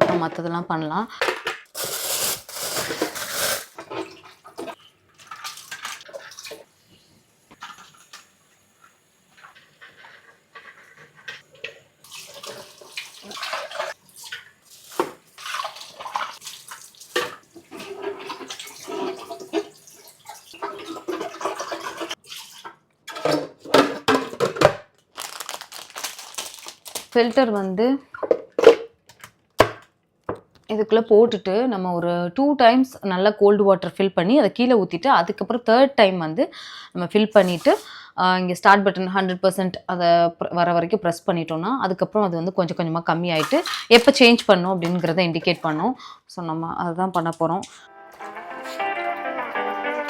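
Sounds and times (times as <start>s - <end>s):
tap water splashing in a sink: 11.3s - 24.3s, 43.4s - 44.2s.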